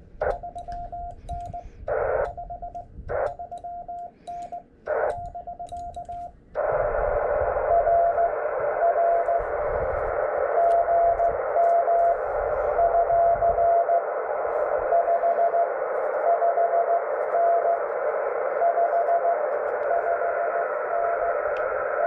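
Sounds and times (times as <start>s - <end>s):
morse code tone: 0.0s - 6.3s, 7.5s - 9.6s, 10.5s - 14.0s
receiver hiss: 0.0s - 22.0s.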